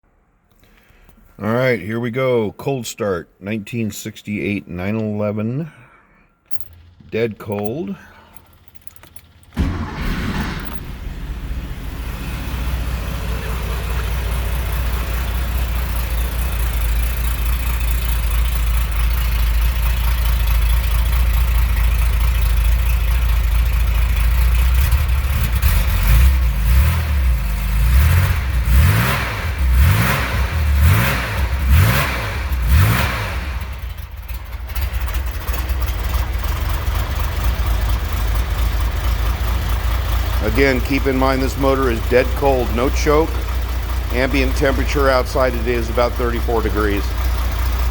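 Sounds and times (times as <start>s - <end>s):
car engine starting and idling: 6.1s - 47.9s
quick engine revs: 9.5s - 16.0s, 24.8s - 33.9s.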